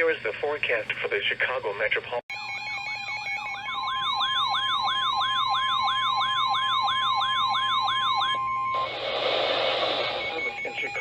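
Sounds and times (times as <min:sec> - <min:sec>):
electronic siren yelping: 0:02.3 - 0:09.1
steady warning alarm tone: 0:02.3 - 0:11.0.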